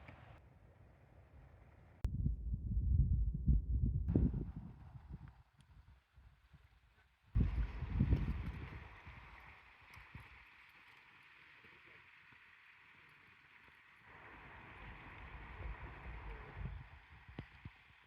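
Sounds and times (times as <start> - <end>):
wind buffeting microphone: 2.0 - 6.7, 7.4 - 10.4, 14.1 - 18.0
faint outdoor rushing noise: 4.1 - 18.0.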